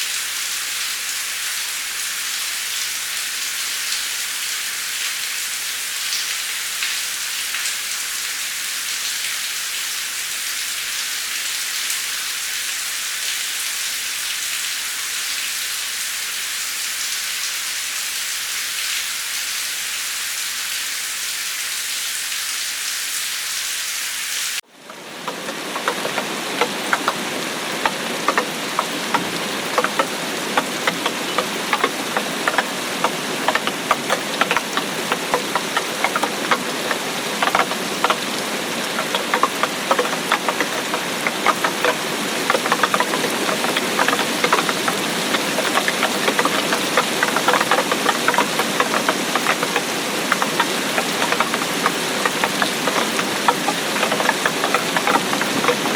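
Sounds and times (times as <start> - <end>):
steady rain hiss: 0.0 - 55.9
raindrops landing as sharp ticks: 24.9 - 55.9.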